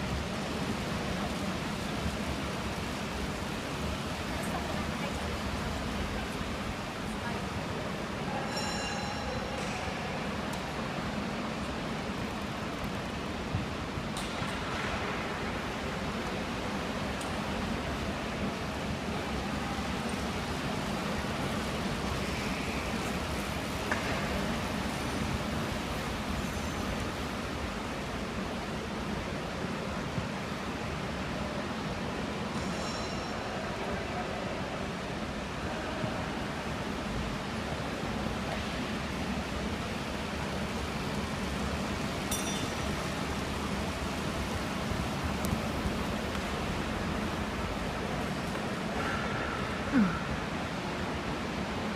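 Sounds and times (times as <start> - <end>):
indoor hall noise: 0.0 - 51.9
bicycles circling velodrome boards: 10.3 - 32.4, 36.6 - 49.3.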